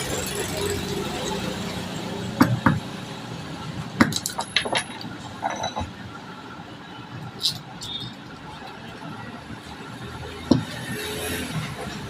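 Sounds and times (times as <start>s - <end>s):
small tools clinking and knocking: 4.1s - 6.0s.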